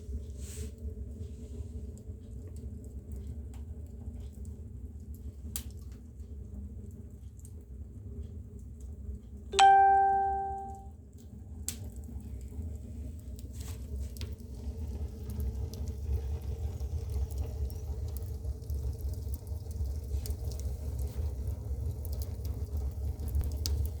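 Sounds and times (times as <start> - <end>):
low rumble of fire: 0.0 - 9.5, 11.1 - 24.0
fire crackles and pops: 1.8 - 7.7, 11.6 - 24.0.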